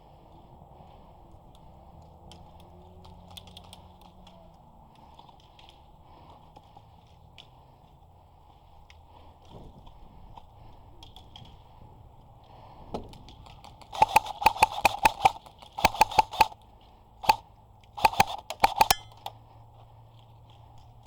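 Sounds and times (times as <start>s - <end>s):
airsoft gun shots: 13.9s - 16.6s, 17.2s - 17.4s, 18.0s - 19.3s.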